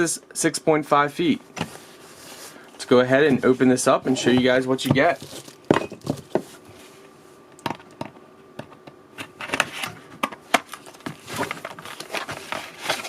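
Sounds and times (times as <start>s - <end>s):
packaging rustling: 4.5s - 6.7s, 10.5s - 13.0s.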